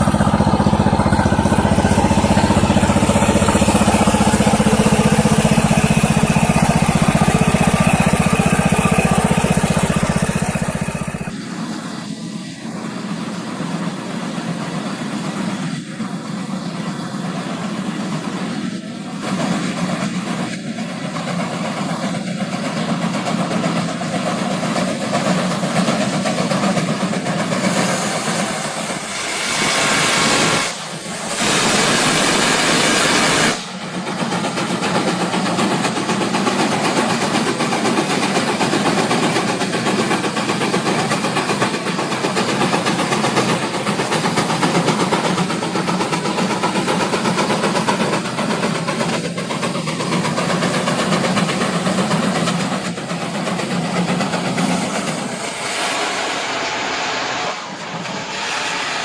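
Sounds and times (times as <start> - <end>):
tractor engine running: 0.0 - 11.4, 31.4 - 55.4.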